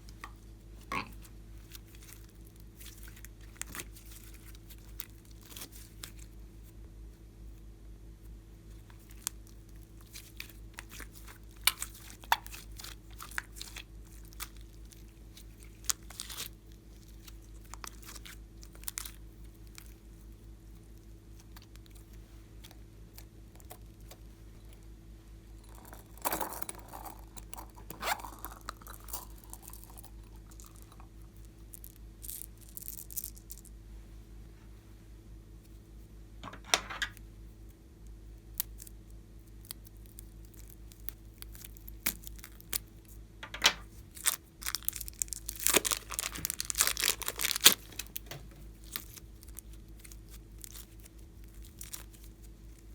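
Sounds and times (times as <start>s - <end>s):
steady low hum: 0.0s - 52.9s
slime crackling and clicking: 44.2s - 52.3s.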